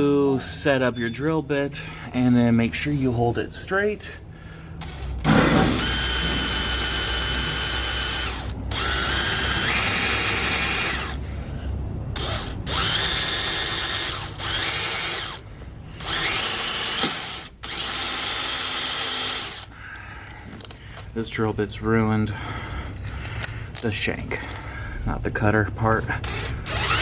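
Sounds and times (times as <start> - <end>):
electric drill boring into metal: 4.8 - 11.2, 12.2 - 15.4, 16.0 - 19.7, 26.2 - 27.0.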